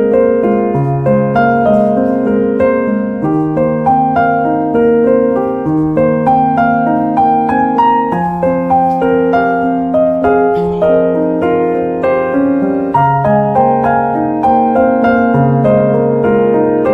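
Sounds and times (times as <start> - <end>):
gentle piano melody: 0.0 - 16.9.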